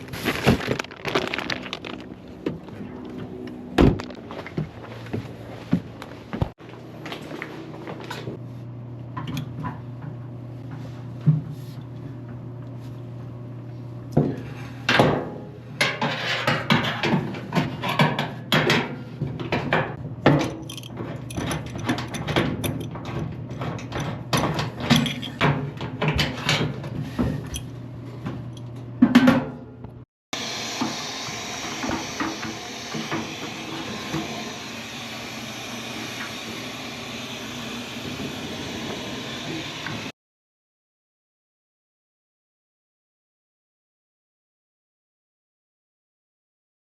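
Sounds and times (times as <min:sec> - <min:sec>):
clothes dryer humming: 0:30.4 - 0:40.1.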